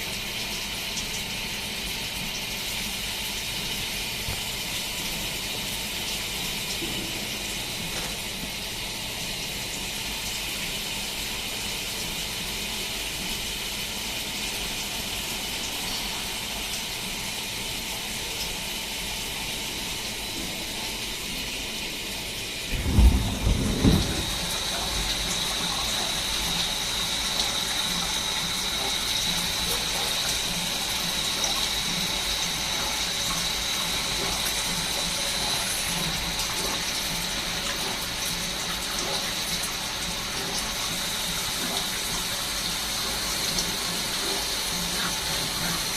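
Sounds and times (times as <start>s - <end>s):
high machine whine: 20.8s - 32.1s.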